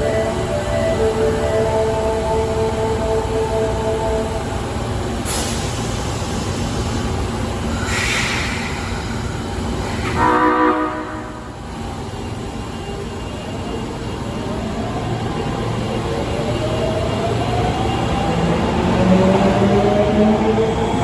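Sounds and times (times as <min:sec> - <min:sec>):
train horn: 0:10.2 - 0:11.6.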